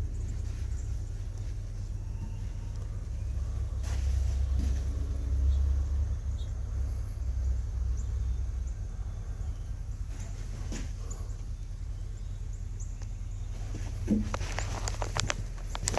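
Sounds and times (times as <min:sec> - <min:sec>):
faint high chirps: 0:01.8 - 0:03.4.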